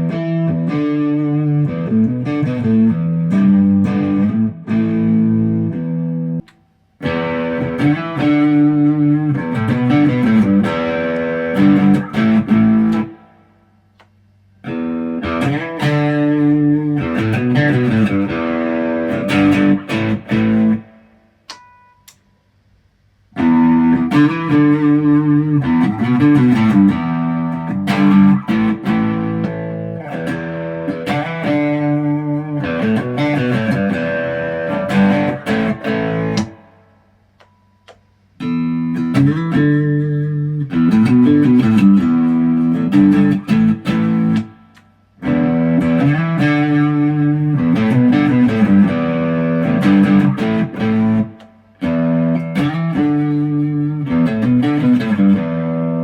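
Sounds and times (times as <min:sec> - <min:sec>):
electric guitar strummed chords: 0:00.0 - 0:13.6, 0:14.6 - 0:22.1, 0:23.4 - 0:56.0.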